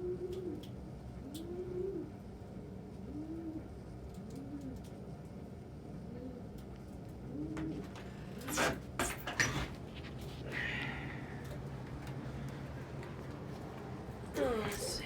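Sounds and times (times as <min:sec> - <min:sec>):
pigeons cooing: 0:00.0 - 0:02.2, 0:02.9 - 0:04.8, 0:07.2 - 0:08.4.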